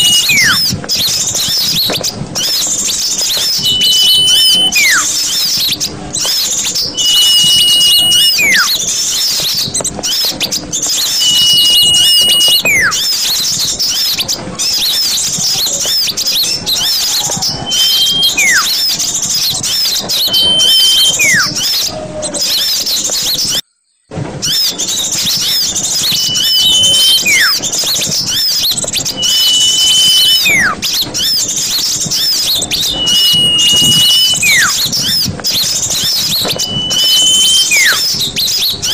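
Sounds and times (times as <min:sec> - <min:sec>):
short high whistle: 0:00.0 - 0:00.7, 0:03.4 - 0:05.1, 0:07.0 - 0:08.8, 0:11.1 - 0:13.0, 0:17.6 - 0:18.8, 0:20.1 - 0:21.5, 0:26.0 - 0:27.6, 0:29.2 - 0:30.8, 0:32.8 - 0:34.8, 0:36.1 - 0:38.1
falling whistled notes: 0:00.0 - 0:23.6, 0:24.4 - 0:38.9
small birds chirping and twittering: 0:00.0 - 0:38.9.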